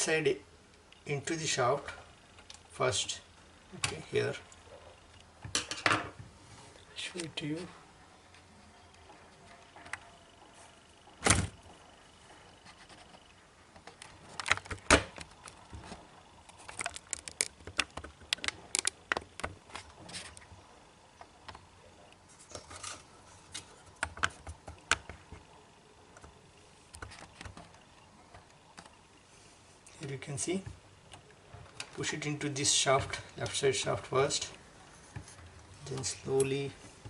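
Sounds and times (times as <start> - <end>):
plastic and metal parts clicking: 13.8 - 20.5.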